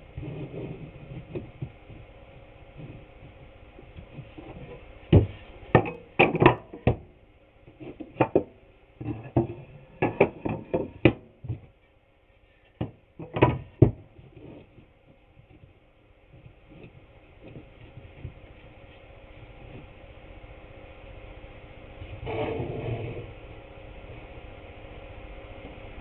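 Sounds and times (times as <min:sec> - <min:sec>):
wooden boards and tools knocking: 0:05.1 - 0:07.1, 0:07.8 - 0:11.7, 0:12.8 - 0:14.8.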